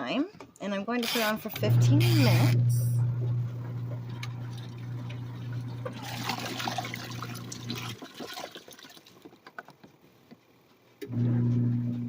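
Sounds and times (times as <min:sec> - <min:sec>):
washing machine motor hum: 0:01.1 - 0:09.2, 0:11.0 - 0:12.0
water dribbling: 0:01.8 - 0:09.7
water sloshing: 0:01.8 - 0:09.7.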